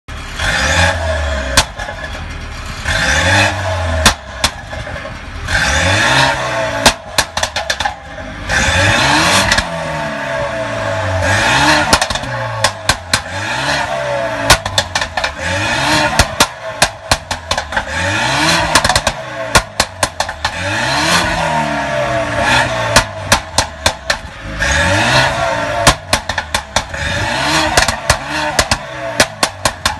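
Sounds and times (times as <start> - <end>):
car engine revving: 0.1 - 29.9
exhaust pops and bangs: 1.5 - 2.4, 3.9 - 5.8, 6.8 - 9.8, 11.6 - 13.4, 14.4 - 21.4, 22.6 - 29.9.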